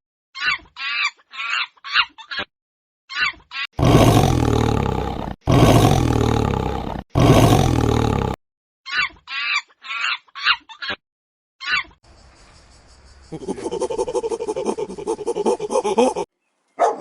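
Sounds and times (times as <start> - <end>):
large animal roaring: 3.8 - 8.4.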